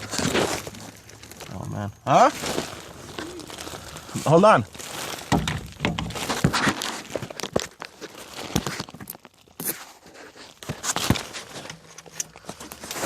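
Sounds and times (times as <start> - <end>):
tools and pipe clicking and knocking: 10.4 - 13.0.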